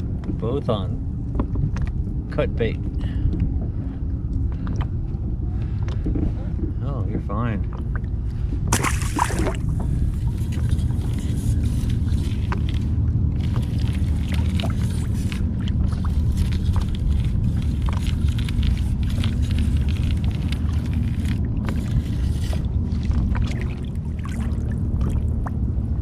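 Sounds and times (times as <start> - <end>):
wind and water rumble: 0.0 - 26.0
brief water rush: 8.7 - 9.6.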